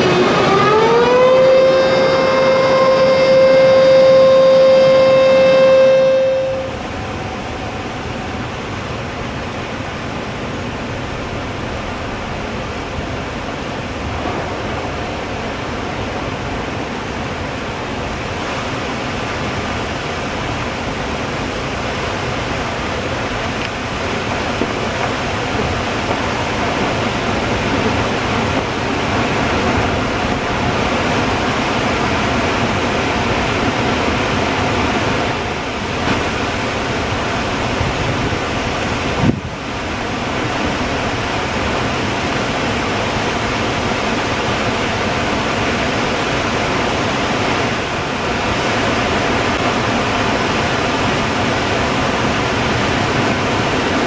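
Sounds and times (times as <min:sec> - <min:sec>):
warning siren steady tone: 0:00.0 - 0:09.4
water rushing from dam outlets: 0:00.0 - 0:54.0.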